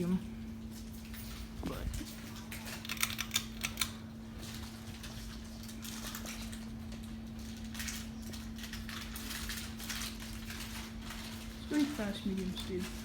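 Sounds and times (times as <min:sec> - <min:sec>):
ceiling fan motor hum: 0:00.0 - 0:13.0.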